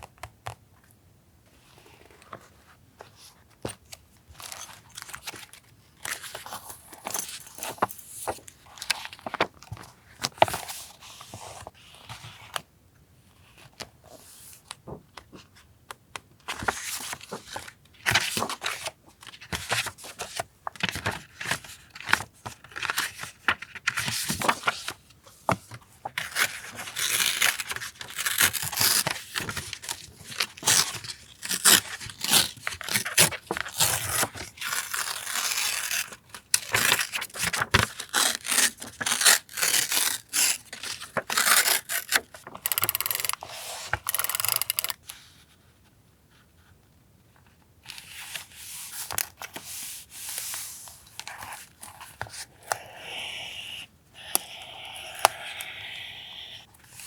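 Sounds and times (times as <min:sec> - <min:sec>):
paper tearing and rustling: 0:30.6 - 0:44.9.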